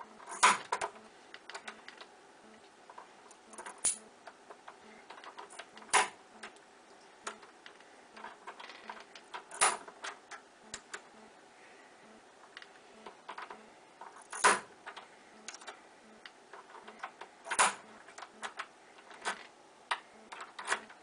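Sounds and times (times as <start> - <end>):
key and pins clicking: 2.9 - 6.6, 7.2 - 11.1, 12.4 - 15.8, 16.5 - 21.0.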